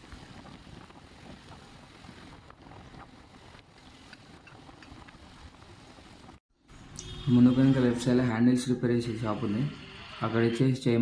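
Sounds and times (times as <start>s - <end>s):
wind buffeting microphone: 0.0s - 6.4s.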